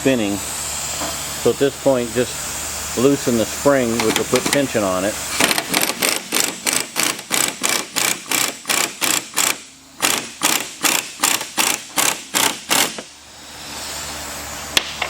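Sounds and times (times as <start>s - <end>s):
ratchet wrench clicking: 5.4s - 13.1s.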